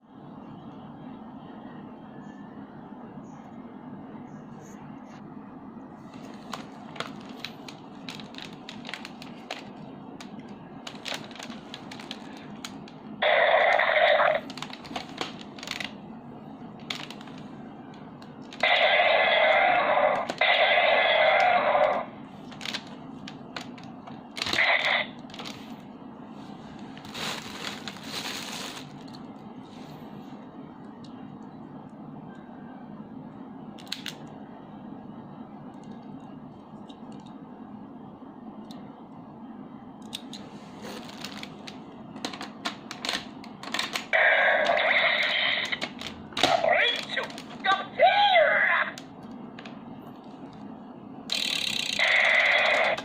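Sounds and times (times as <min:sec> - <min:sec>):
toy electronic sound: 0:13.2 - 0:14.4, 0:51.3 - 0:53.0.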